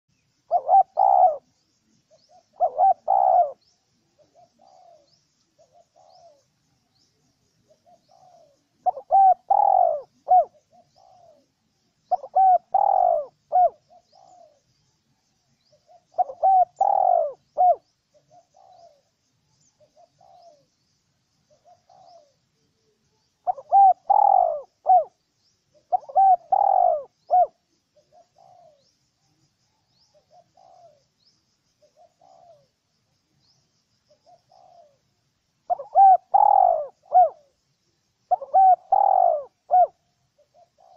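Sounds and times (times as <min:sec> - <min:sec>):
dove cooing: 0:00.5 - 0:06.5, 0:07.6 - 0:14.6, 0:15.6 - 0:19.1, 0:19.8 - 0:20.7, 0:21.5 - 0:22.4, 0:23.4 - 0:28.9, 0:30.0 - 0:31.1, 0:31.8 - 0:32.7, 0:34.1 - 0:35.0, 0:35.7 - 0:37.6, 0:38.3 - 0:40.9.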